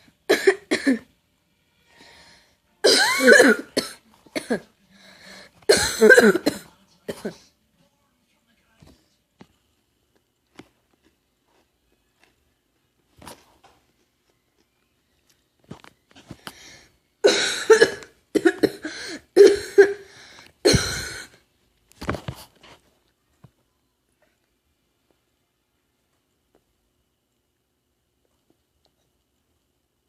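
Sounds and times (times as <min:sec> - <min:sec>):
person coughing: 0:00.3 - 0:01.1, 0:02.8 - 0:04.7, 0:05.7 - 0:07.4, 0:17.2 - 0:21.4.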